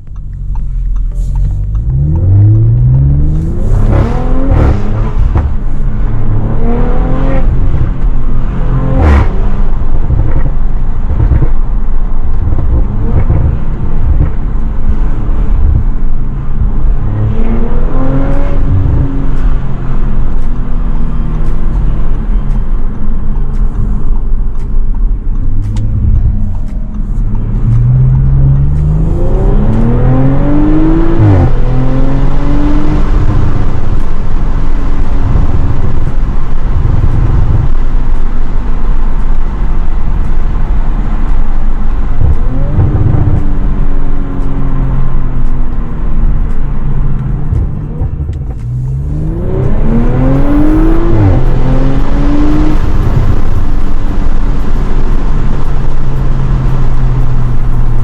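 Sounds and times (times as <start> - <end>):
car engine accelerating: 0.0 - 58.0
exhaust pops and cracks: 9.9 - 16.8.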